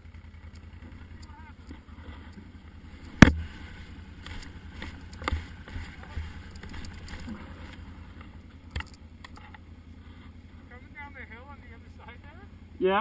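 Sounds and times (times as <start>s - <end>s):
quad bike idling: 0.0s - 13.0s
sharp knocks: 3.1s - 3.6s.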